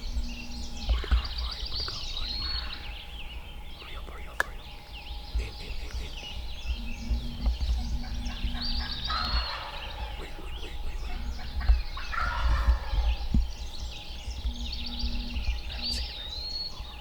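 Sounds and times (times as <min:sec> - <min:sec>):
songbirds chirping: 0:00.0 - 0:17.0
turkey gobbling: 0:00.5 - 0:02.9, 0:05.4 - 0:16.1.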